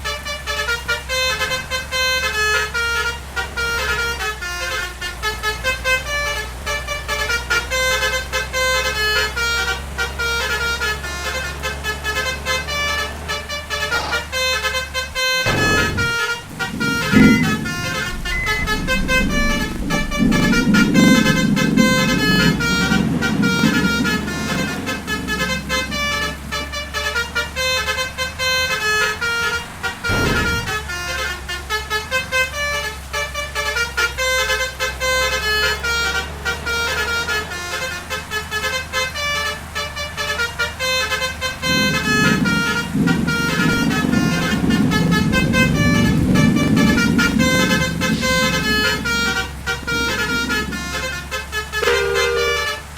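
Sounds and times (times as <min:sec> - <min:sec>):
bus musical horn tune: 0:00.0 - 0:52.9
moving vehicle rumble: 0:00.0 - 0:52.9.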